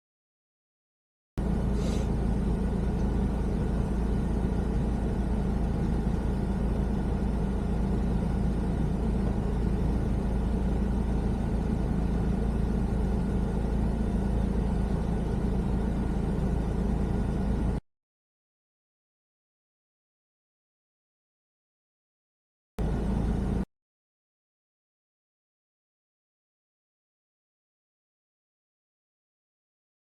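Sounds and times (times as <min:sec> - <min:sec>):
car engine and road rumble: 0:01.4 - 0:17.8, 0:22.8 - 0:23.7.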